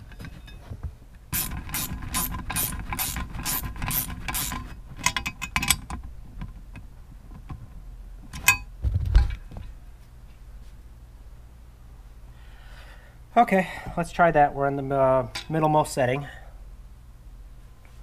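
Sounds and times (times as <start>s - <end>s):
ratchet wrench strokes: 1.4s - 4.7s.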